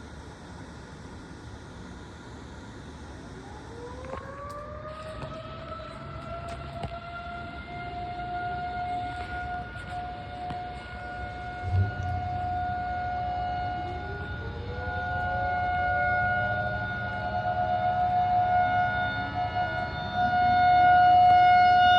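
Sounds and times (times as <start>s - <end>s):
tornado warning sirens wailing: 0.0s - 21.9s
low rumble: 3.2s - 15.8s
siren winding up in pitch: 3.5s - 21.9s.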